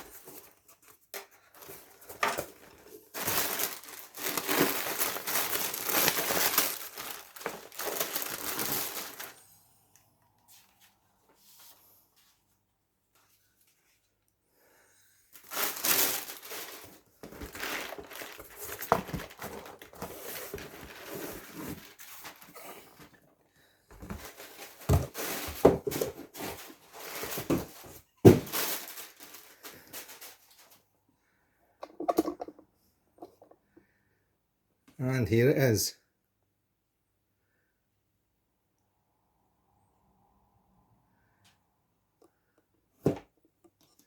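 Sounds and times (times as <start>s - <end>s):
packaging crinkling and rustling: 0.0s - 9.4s, 15.4s - 23.3s, 23.9s - 30.9s
packaging tearing: 2.5s - 9.4s, 15.4s - 22.6s.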